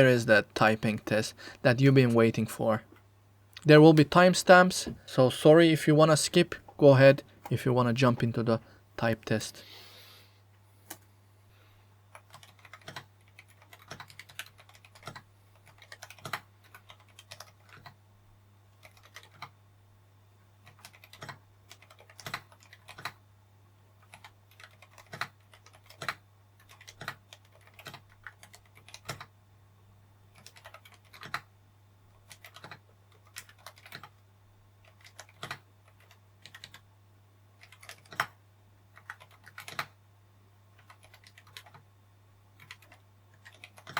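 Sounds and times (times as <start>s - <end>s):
faint low hum: 0.0s - 43.9s
muted keyboard typing: 12.1s - 18.0s, 18.7s - 19.6s, 20.6s - 23.2s, 24.0s - 29.3s, 30.3s - 31.5s, 32.1s - 34.2s, 34.8s - 36.8s, 37.6s - 40.0s, 40.8s - 41.9s, 42.6s - 43.9s.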